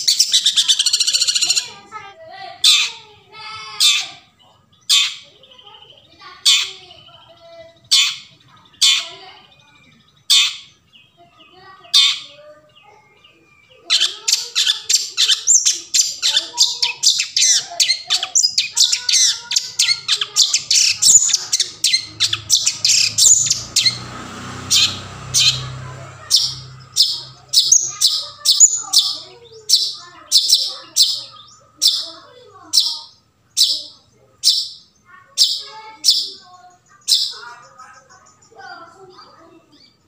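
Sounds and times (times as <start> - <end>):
bird giving harsh scratchy calls: 0.0 - 1.8, 3.7 - 5.3, 7.9 - 9.3, 10.3 - 10.8, 11.9 - 12.4, 13.8 - 36.4.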